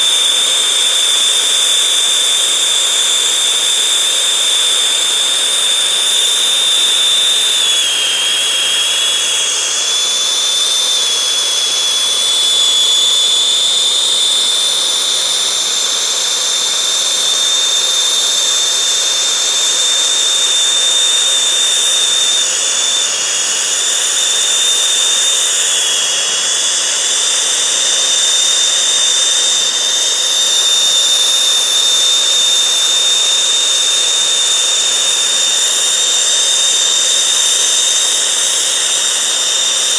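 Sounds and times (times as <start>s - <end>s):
high thin whistle: 0.0s - 39.9s
gas torch hissing: 15.2s - 39.9s.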